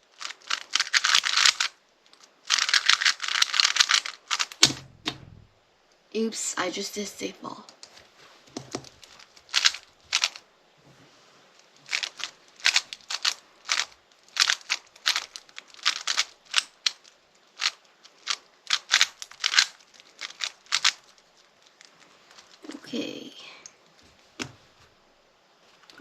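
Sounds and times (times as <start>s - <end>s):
plastic puzzle cube clicking: 0.1s - 5.3s, 8.6s - 10.4s, 11.6s - 21.2s.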